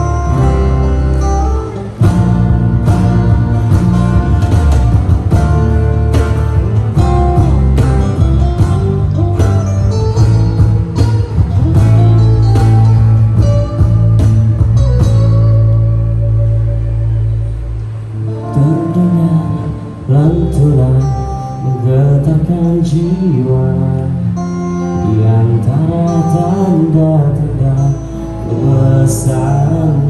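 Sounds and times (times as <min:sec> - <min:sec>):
guitar: 0:00.0 - 0:30.0
heavy bass: 0:00.0 - 0:30.0
live band playing: 0:00.0 - 0:30.0.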